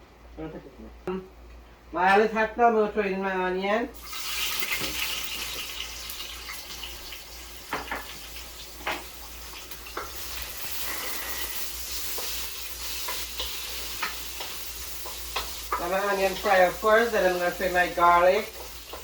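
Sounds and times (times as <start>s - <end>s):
onion sizzling in oil: 4.0s - 19.0s.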